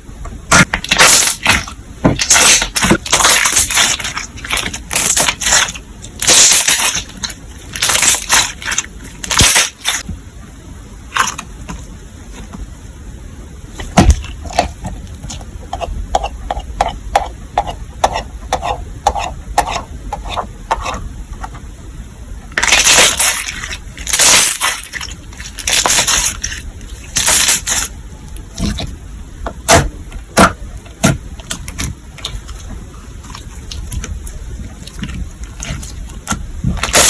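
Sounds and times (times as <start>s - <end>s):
slime squishing by hand: 29.7s - 37.0s.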